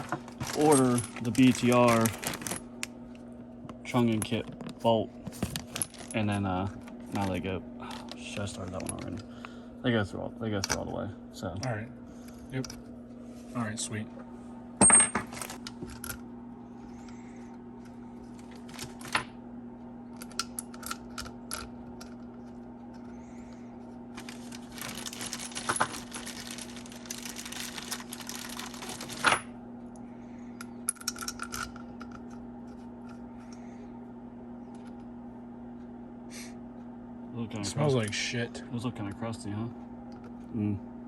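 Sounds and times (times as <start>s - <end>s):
metal engine parts clinking: 0.0s - 2.6s, 14.8s - 15.6s
rattling and scraping: 0.0s - 2.6s.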